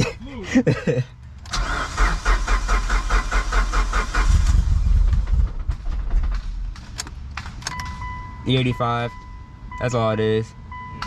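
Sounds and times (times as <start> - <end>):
car engine cranking and starting: 1.3 - 8.2
steady electronic beep: 7.7 - 11.0.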